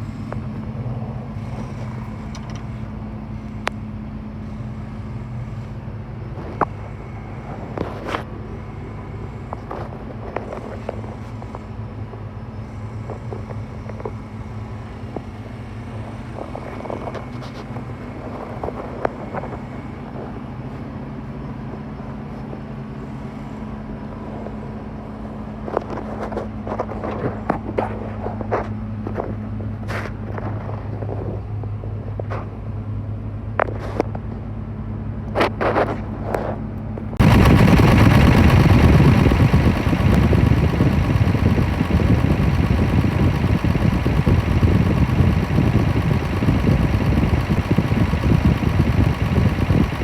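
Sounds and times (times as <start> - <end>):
excavator diesel engine running: 37.2 - 50.0.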